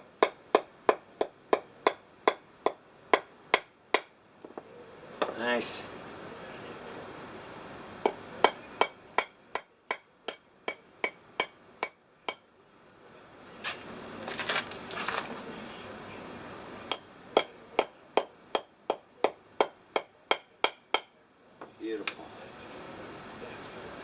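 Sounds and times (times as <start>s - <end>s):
hammer tapping metal: 8.0s - 12.5s, 16.9s - 21.1s
handling noise: 13.5s - 15.8s.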